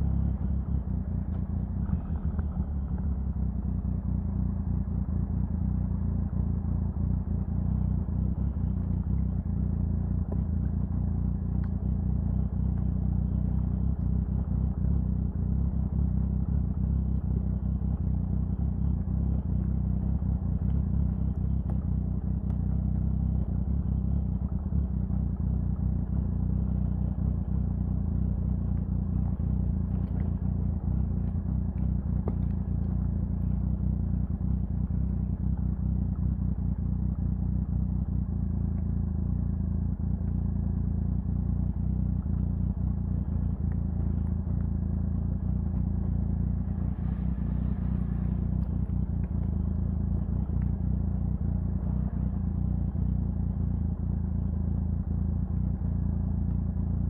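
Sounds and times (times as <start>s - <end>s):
motorcycle engine running steadily: 0.0s - 57.0s.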